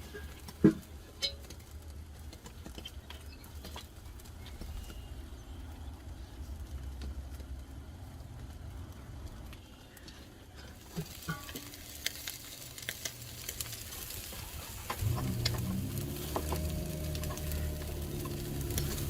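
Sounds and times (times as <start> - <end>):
sharp pops and crackles: 0.0 - 19.0
food sizzling on a grill: 9.6 - 19.0.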